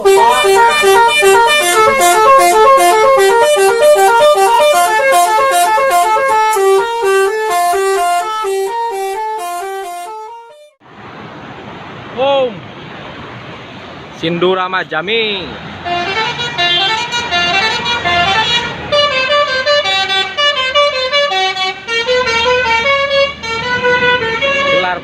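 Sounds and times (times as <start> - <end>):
bus musical horn tune: 0.0 - 10.8, 15.8 - 25.0.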